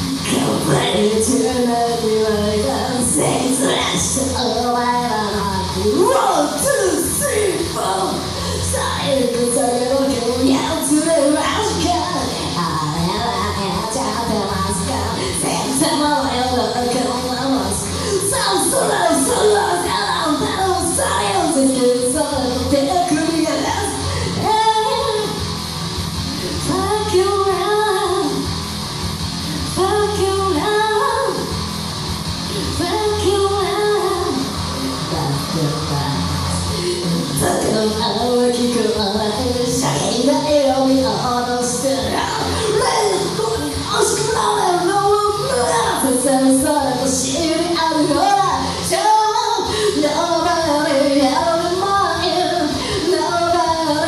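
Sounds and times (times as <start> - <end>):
person singing karaoke: 0.0 - 54.0
rock backing track with guitar: 31.4 - 32.6.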